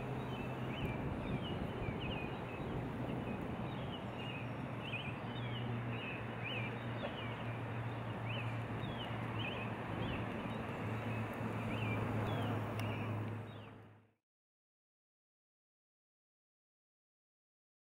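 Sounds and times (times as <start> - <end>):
small birds chirping: 0.0 - 13.8.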